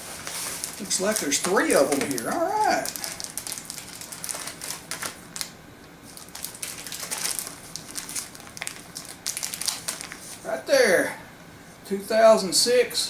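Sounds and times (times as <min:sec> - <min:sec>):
packaging crinkling and clicking: 0:00.2 - 0:05.5, 0:06.1 - 0:10.4.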